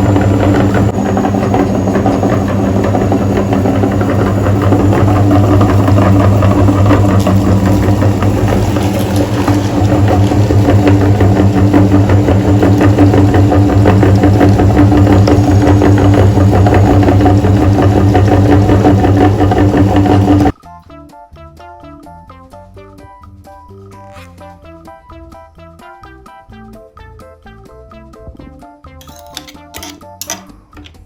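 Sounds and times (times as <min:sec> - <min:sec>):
engine running with rattle: 0:00.0 - 0:20.5.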